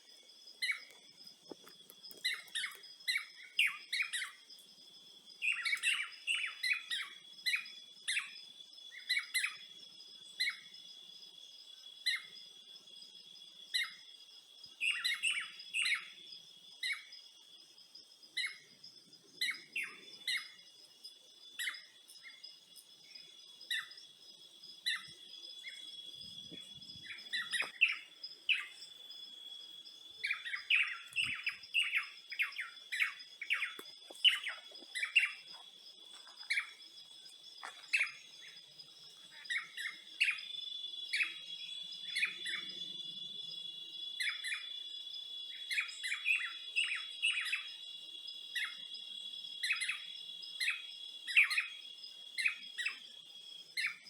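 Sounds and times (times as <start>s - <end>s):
birds chirping: 18.4s - 49.0s.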